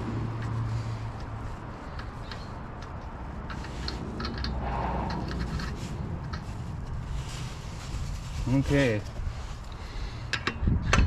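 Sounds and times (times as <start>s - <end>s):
metallic clicks and scraping: 0.0s - 8.2s
low steady rumble: 0.0s - 10.2s.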